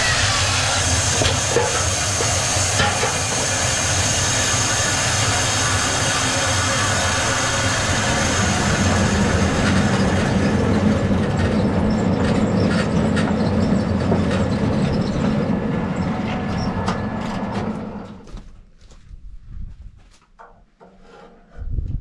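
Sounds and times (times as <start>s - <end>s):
sawmill machinery droning: 0.0s - 18.4s.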